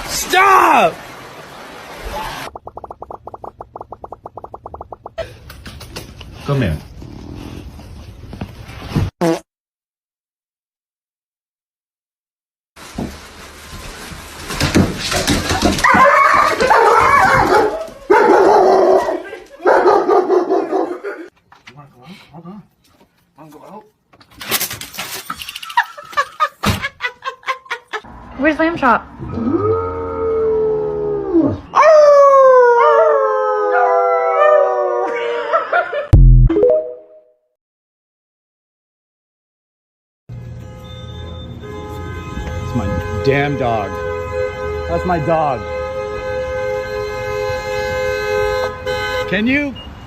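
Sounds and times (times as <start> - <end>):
dog howling: 29.4 - 35.7.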